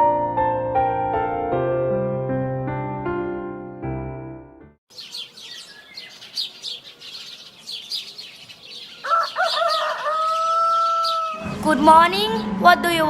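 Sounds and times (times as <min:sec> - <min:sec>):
small birds chirping: 0:04.9 - 0:12.8
rooster crowing: 0:08.9 - 0:12.6.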